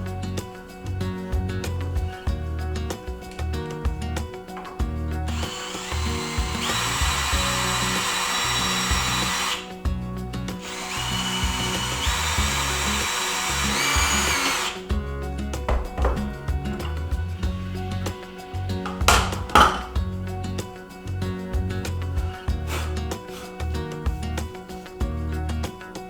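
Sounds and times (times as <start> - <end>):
background music: 0.0 - 26.0
power drill running: 5.3 - 9.7, 10.6 - 14.9.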